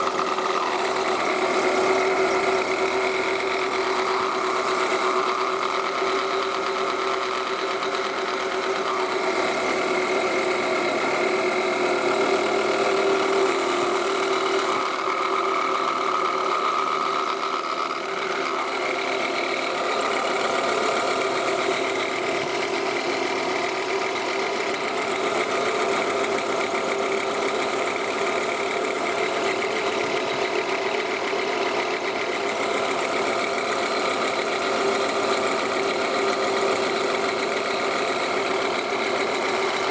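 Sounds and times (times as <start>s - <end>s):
alternator rattling growl: 0.0s - 39.9s
car engine idling: 0.0s - 39.9s.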